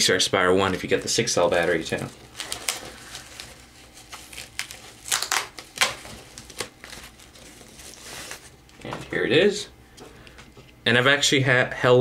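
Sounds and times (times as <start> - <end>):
plastic packaging crinkling: 0.5 - 8.9.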